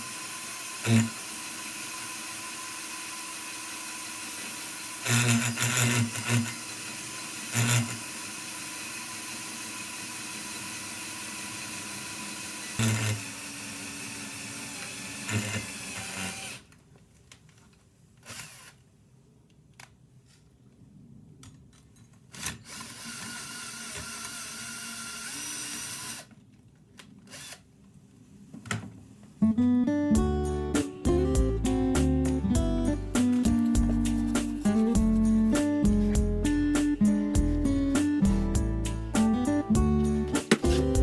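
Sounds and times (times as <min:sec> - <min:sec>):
power tool motor whining: 0:00.0 - 0:16.7
acoustic guitar music: 0:29.4 - 0:41.0.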